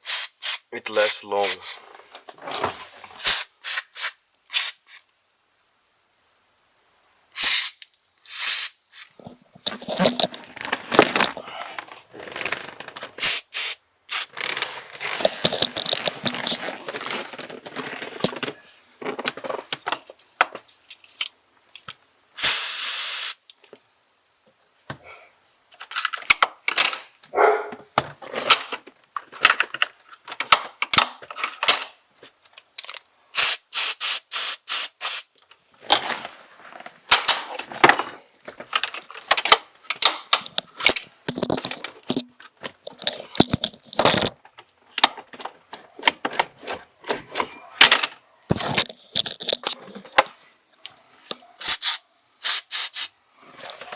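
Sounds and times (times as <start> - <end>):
aerosol spray hiss: 0.0 - 1.8, 3.2 - 4.9, 7.4 - 9.1, 13.2 - 14.3, 22.4 - 23.4, 33.4 - 35.3, 51.6 - 53.1
small car parts clicking and rattling: 25.7 - 33.1, 37.1 - 50.3.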